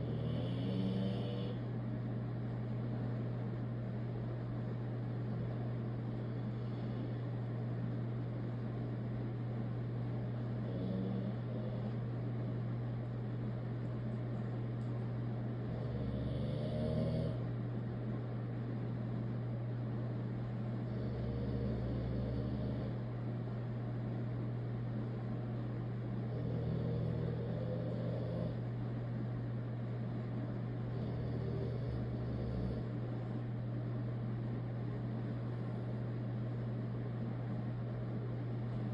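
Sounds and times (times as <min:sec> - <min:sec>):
dog snoring: 0:00.0 - 0:01.7, 0:06.2 - 0:07.4, 0:10.5 - 0:12.1, 0:15.6 - 0:17.5, 0:20.8 - 0:23.0, 0:26.2 - 0:28.7, 0:30.8 - 0:33.0
steady low hum: 0:00.0 - 0:38.9.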